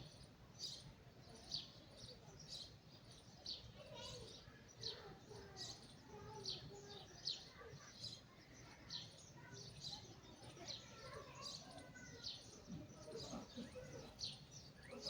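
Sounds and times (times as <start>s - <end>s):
small bird chirping: 10.8s - 15.0s.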